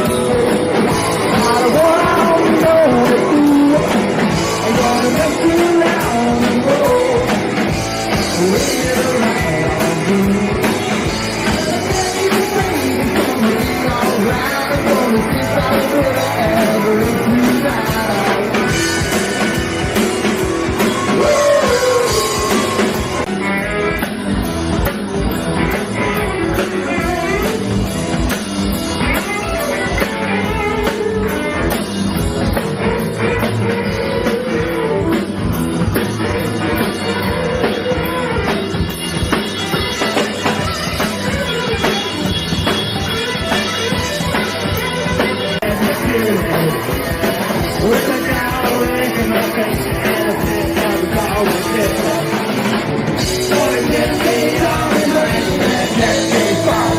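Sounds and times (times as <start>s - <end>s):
person singing: 0.0s - 19.2s, 20.6s - 23.3s, 45.3s - 56.9s
bass guitar: 0.0s - 56.9s
drum kit: 0.0s - 56.9s
electric guitars: 0.0s - 56.9s.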